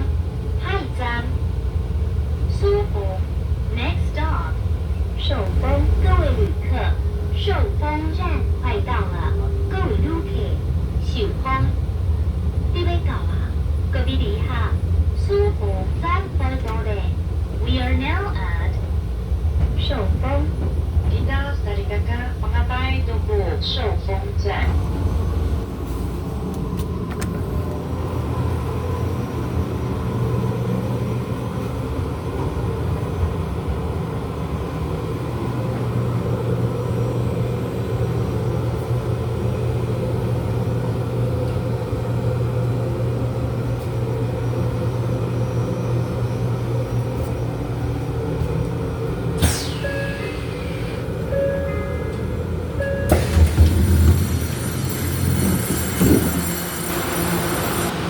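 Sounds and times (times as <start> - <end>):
train rumbling on rails: 0.0 - 58.0
train squeal: 49.4 - 52.2, 52.8 - 58.0.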